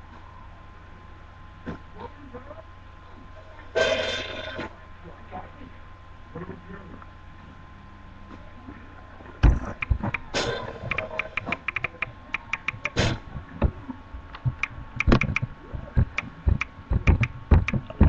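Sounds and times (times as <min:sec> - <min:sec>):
quick sharp clicks and taps: 0:10.9 - 0:13.0, 0:14.3 - 0:18.0.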